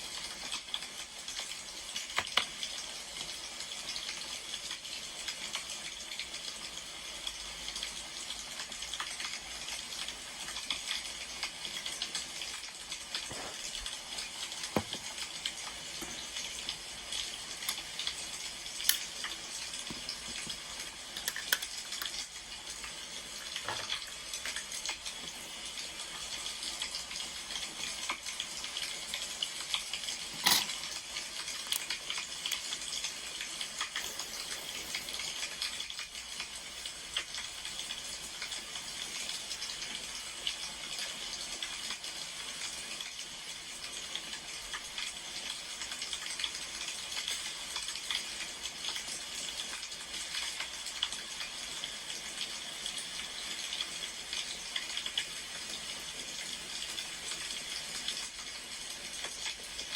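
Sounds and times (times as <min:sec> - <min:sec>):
wood fire crackling: 0:10.9 - 0:40.0.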